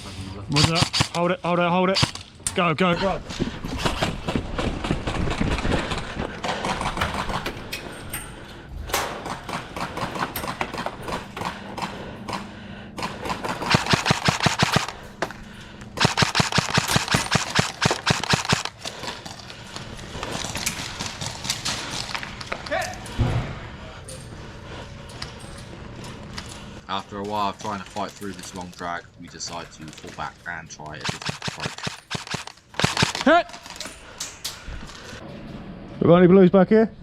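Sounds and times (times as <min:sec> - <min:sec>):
airsoft guns firing: 0:00.5 - 0:02.3, 0:09.1 - 0:15.0, 0:15.9 - 0:18.8, 0:31.0 - 0:33.4.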